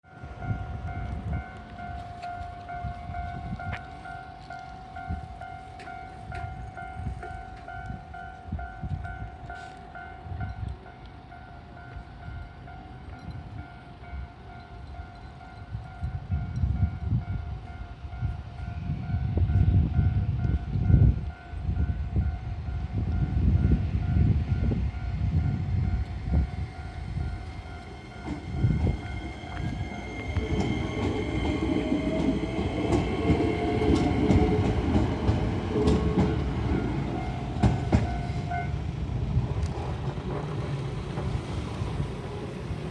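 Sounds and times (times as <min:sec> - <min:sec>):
electronic crossing warning bell: 0:00.1 - 0:38.8
train wheels rumbling: 0:00.2 - 0:42.9
rising whine: 0:26.0 - 0:35.0.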